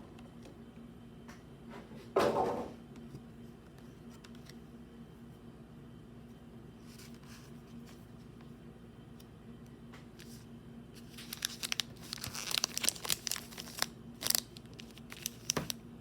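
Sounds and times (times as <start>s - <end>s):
steady low hum: 0.0s - 16.0s
light packaging rustles: 10.2s - 15.8s
packaging scraping rustle: 11.0s - 15.8s.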